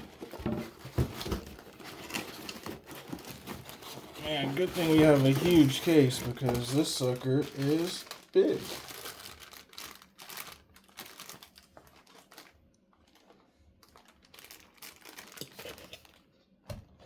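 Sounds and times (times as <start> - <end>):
packaging rustling and light clicks: 0.0 - 16.3.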